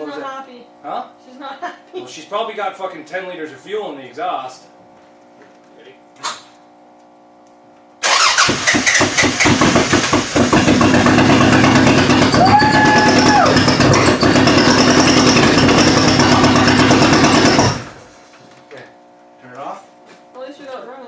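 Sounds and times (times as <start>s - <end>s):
car engine sputtering and running: 8.0s - 18.2s.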